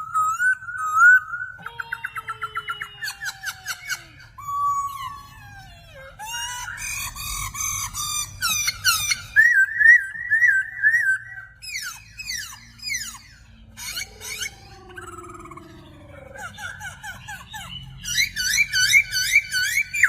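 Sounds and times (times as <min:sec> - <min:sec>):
birds singing: 0:00.0 - 0:20.0.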